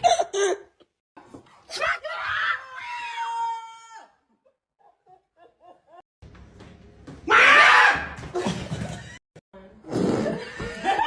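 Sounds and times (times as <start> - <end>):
person screaming in fright: 1.8 - 4.2
laughter: 4.4 - 6.0, 10.2 - 11.0.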